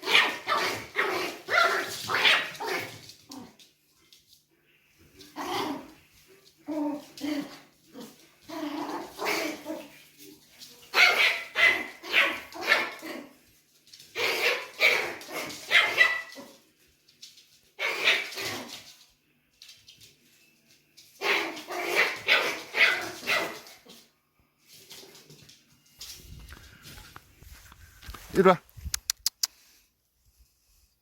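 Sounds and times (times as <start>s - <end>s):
dog barking: 0.0s - 2.9s, 10.9s - 13.0s, 14.3s - 16.6s, 21.2s - 23.8s.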